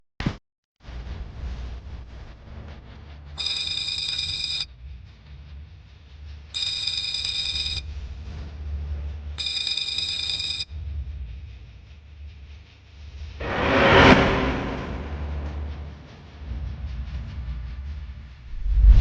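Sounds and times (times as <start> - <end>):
steady low rumble: 0.8 - 3.4, 10.8 - 19.0
electronic ringing tone: 3.4 - 4.7, 6.6 - 7.8, 9.4 - 10.7.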